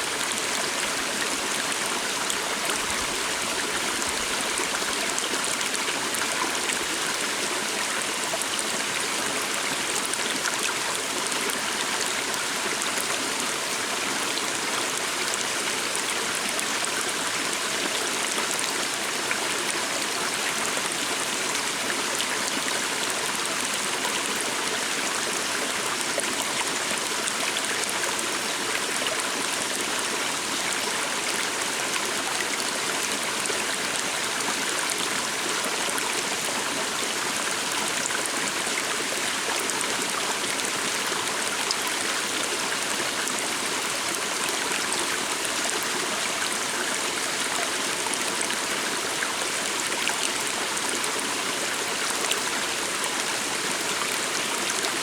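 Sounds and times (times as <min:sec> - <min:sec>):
forest stream flowing: 0:00.0 - 0:55.0.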